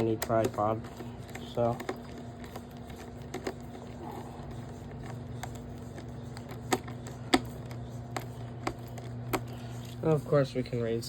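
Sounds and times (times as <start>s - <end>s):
clicks and taps of plastic parts: 0.0s - 3.7s
steady low hum: 0.0s - 11.0s.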